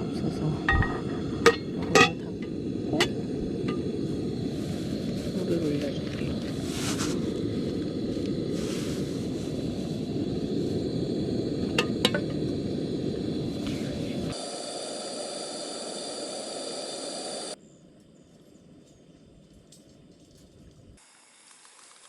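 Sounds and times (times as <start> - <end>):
gas stove burner roaring: 0.0 - 17.6
high thin hiss: 2.4 - 17.6
metal clinks: 18.0 - 20.9.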